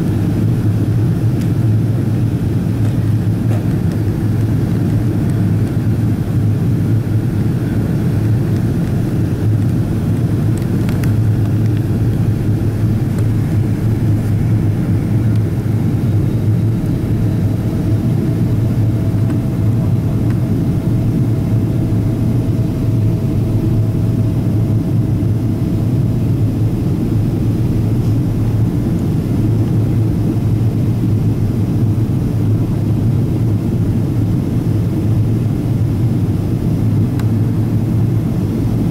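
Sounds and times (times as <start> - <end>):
airplane cabin engine rush: 0.0 - 38.9.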